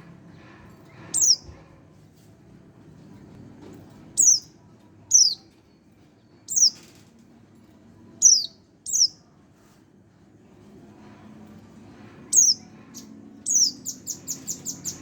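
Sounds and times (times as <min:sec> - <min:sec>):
young bird high calls: 0:05.1 - 0:05.4, 0:08.2 - 0:09.1.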